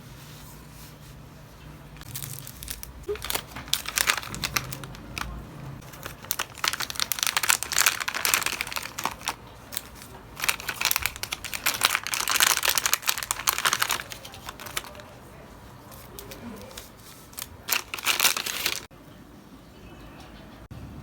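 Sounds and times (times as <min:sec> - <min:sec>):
packaging crinkling: 0:02.1 - 0:15.2, 0:15.8 - 0:18.9.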